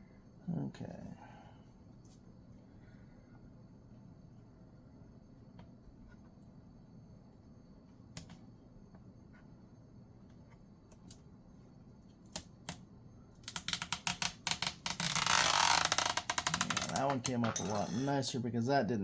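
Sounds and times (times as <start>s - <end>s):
tape peeling crackle: 13.4s - 17.2s.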